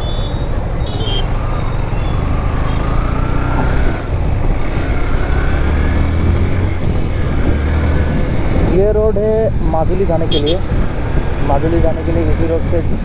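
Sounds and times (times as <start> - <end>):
motorcycle engine running: 0.0 - 9.2, 9.9 - 12.5
wind and road noise: 0.0 - 13.0.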